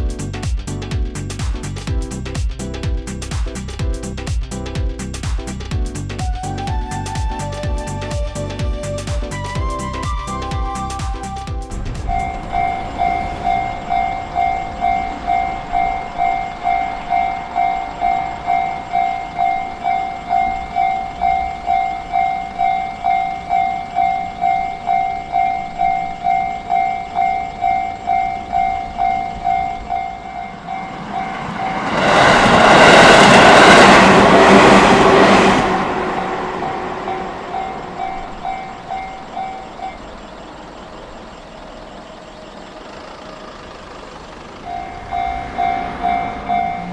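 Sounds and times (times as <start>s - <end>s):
train passing at speed: 9.6s - 46.9s
level-crossing alarm bell ringing: 11.8s - 32.4s, 35.8s - 43.6s, 44.6s - 46.9s.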